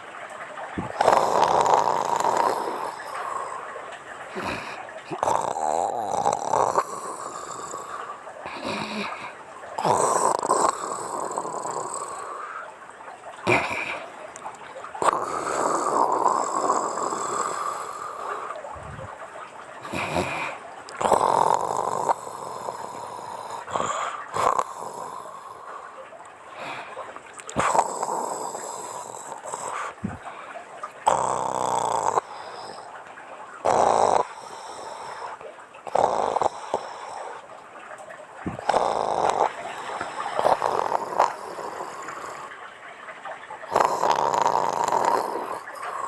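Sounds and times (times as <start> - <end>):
woman snoring: 0.8 - 3.7, 4.3 - 12.3, 15.0 - 17.6, 19.8 - 25.4, 31.1 - 32.8, 33.6 - 34.4, 35.9 - 36.8, 38.5 - 39.5, 40.4 - 42.5, 43.7 - 46.0.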